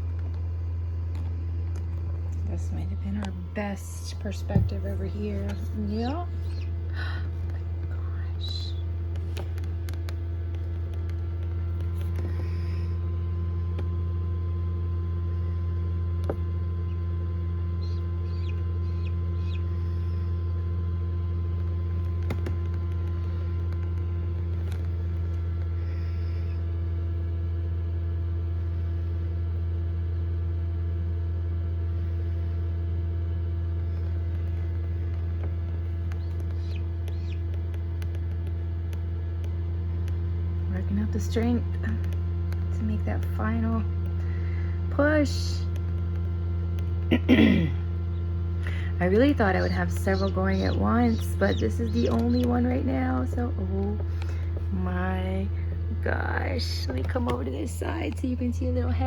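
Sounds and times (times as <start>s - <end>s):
egg incubator humming: 0.0s - 59.0s
chick peeping: 5.4s - 6.8s, 16.8s - 20.6s, 35.7s - 38.2s, 48.1s - 53.4s.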